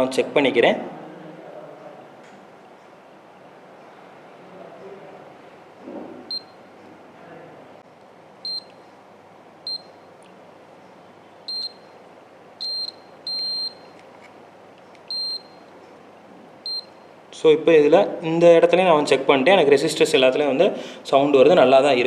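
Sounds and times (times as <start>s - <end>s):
multimeter continuity beeps: 6.2s - 6.7s, 8.4s - 8.9s, 9.6s - 10.2s, 11.4s - 14.1s, 15.0s - 15.9s, 16.6s - 17.1s.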